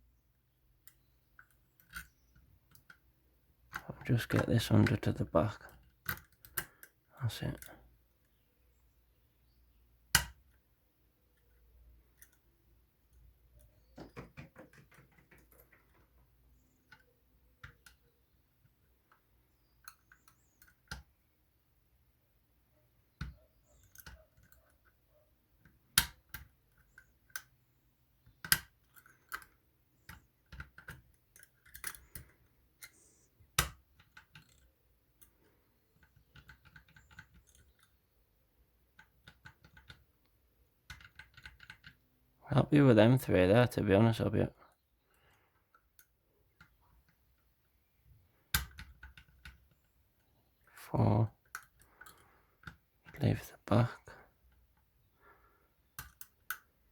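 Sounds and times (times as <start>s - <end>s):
lock picking tools clicking: 0.8s - 8.4s, 11.3s - 21.1s, 23.2s - 25.0s, 28.2s - 35.4s, 36.0s - 38.0s, 40.8s - 42.0s, 48.3s - 50.7s, 51.4s - 53.2s, 55.8s - 56.9s.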